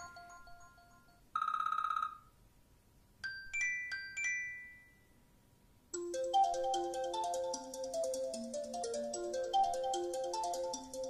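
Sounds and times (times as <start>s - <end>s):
bell-like ringtone notes: 0.0s - 2.2s, 6.0s - 11.0s
rapid pulsing ringtone: 0.0s - 2.3s, 6.0s - 11.0s.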